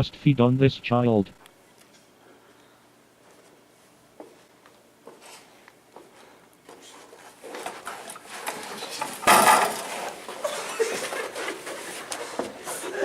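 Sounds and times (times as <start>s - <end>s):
scuffling with clattering knocks: 6.7s - 13.0s.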